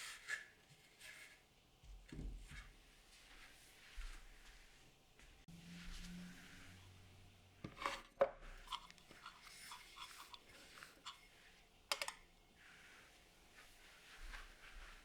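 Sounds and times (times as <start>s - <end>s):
light scraping and rubbing: 5.6s - 15.0s
objects knocking and clicking: 11.9s - 12.2s.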